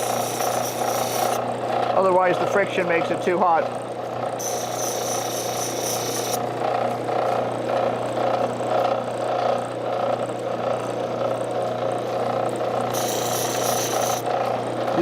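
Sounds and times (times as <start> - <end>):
metal grinding on wheel: 0.0 - 1.4, 4.4 - 6.4, 12.9 - 14.3
grinding wheel motor hum: 0.0 - 15.0.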